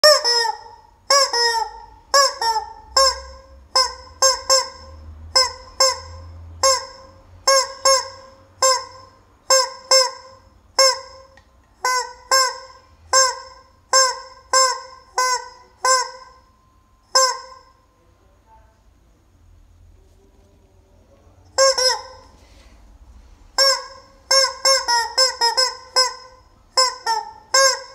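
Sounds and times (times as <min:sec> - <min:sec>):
rubber chicken toy squawking: 0:00.0 - 0:16.5, 0:17.1 - 0:17.8, 0:21.6 - 0:22.4, 0:23.6 - 0:27.9.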